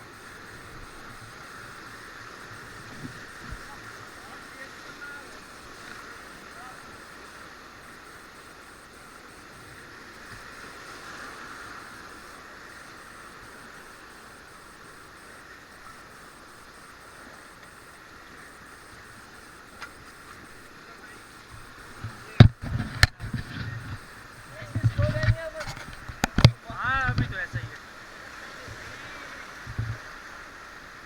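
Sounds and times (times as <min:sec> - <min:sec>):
whitewater river rushing: 0:18.8 - 0:31.0.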